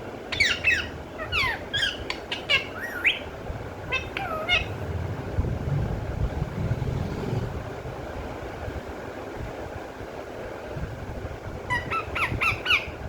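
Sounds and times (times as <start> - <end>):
parrot chirps and squawks: 0.3 - 4.8, 11.7 - 13.0.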